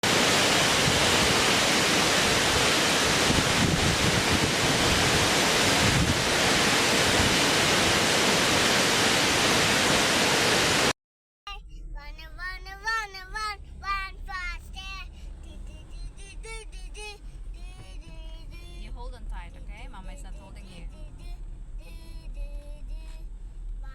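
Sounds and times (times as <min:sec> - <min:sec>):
fast-flowing river rushing: 0:00.0 - 0:10.9
child singing: 0:11.5 - 0:19.0, 0:20.0 - 0:23.9.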